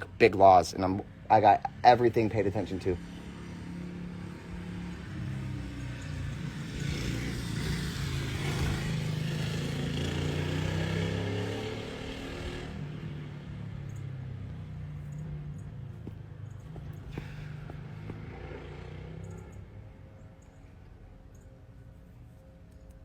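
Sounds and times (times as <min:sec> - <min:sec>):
vehicle engine humming: 0:00.0 - 0:23.0
rush of passing vehicle: 0:02.6 - 0:20.1.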